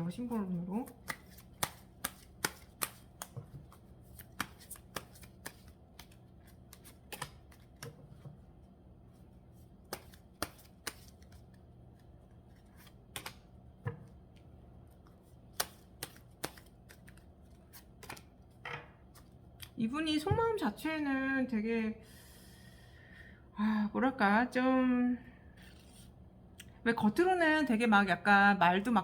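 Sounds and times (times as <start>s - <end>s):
cards being shuffled: 0.8s - 8.3s, 9.8s - 13.5s, 14.3s - 19.4s.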